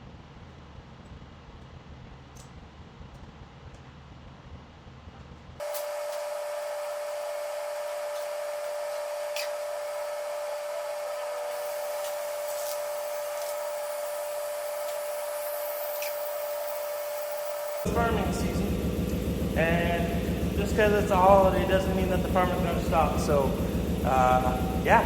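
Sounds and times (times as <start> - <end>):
air hissing into tire: 5.6 - 22.2.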